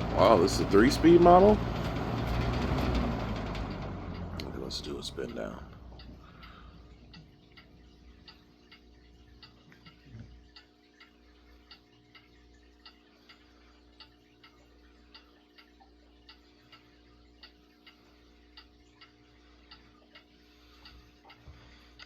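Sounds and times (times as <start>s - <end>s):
box fan coasting down: 0.0s - 8.8s
faint steady hum: 0.0s - 22.0s.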